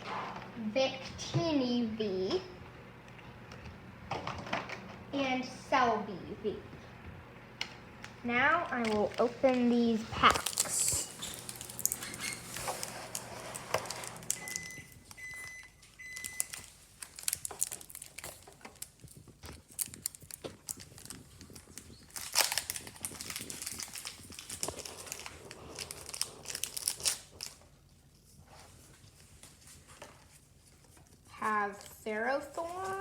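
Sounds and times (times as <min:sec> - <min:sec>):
foil pack crinkling and tearing: 0:08.5 - 0:15.2, 0:16.2 - 0:27.8.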